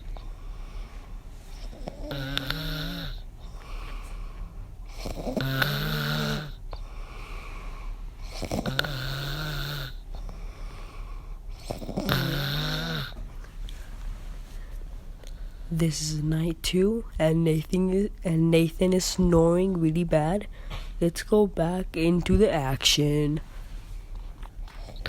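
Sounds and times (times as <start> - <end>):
soft breathing: 0.0 - 15.9, 20.4 - 21.0, 23.4 - 25.0
man snoring loudly: 1.6 - 3.2, 4.9 - 6.6, 8.2 - 10.0, 11.6 - 13.2.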